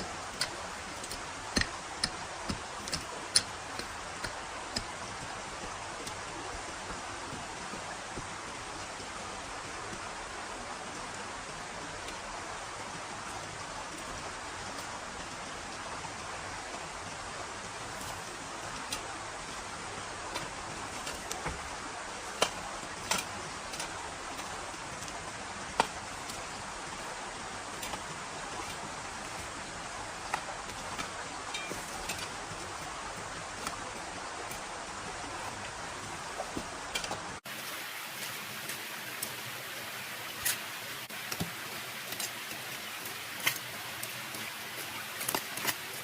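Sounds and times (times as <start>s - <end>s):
forest ambience rushing: 15.6s - 46.0s.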